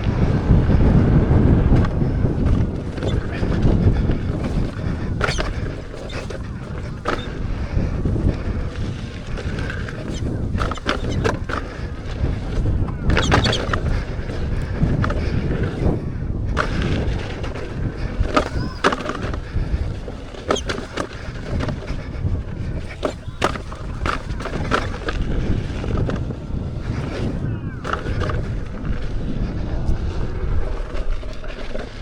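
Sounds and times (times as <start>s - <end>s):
tyre rolling over dirt: 0.0s - 32.0s
wind buffeting microphone: 0.0s - 32.0s
clicks and knocks from stones: 16.6s - 22.0s.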